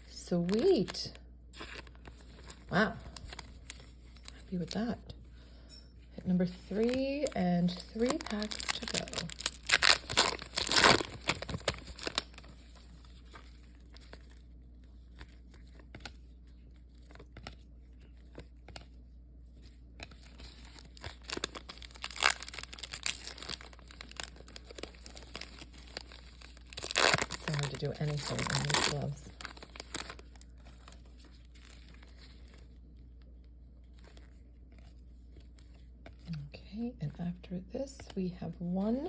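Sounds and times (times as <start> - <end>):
card pack wrapper crinkling and tearing: 0.1 - 4.8, 6.5 - 16.3, 20.0 - 32.8.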